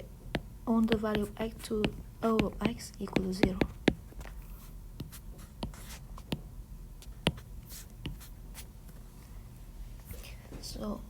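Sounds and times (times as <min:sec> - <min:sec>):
pen tapping on surface: 0:00.3 - 0:08.3
pen scratching on paper: 0:00.3 - 0:08.7.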